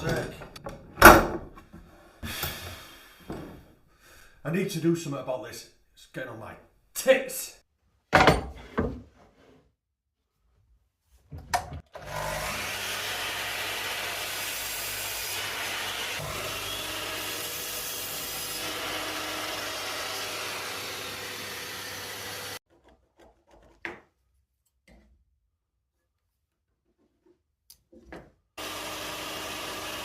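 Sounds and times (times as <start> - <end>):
power tool cutting wood: 11.9 - 22.6, 28.6 - 30.0.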